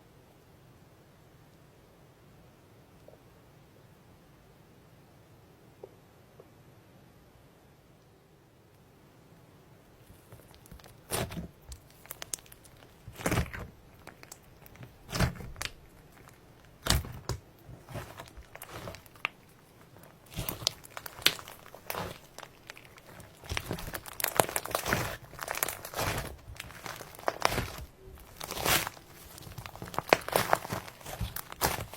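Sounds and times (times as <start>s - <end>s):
slime squishing and crackling: 10.0s - 31.9s.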